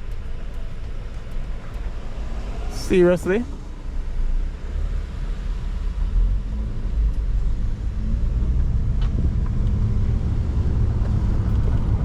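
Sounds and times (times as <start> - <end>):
car engine and tyres rumbling: 0.0 - 12.0.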